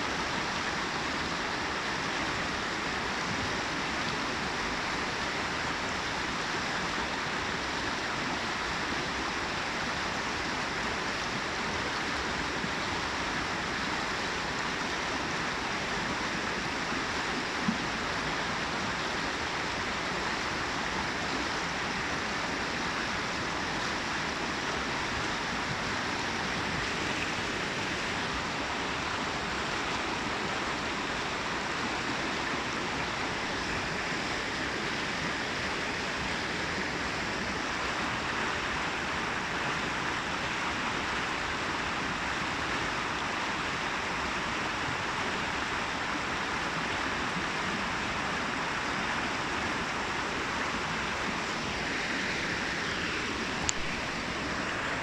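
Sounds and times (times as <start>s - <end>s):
brook water babbling over rocks: 0.0s - 55.0s.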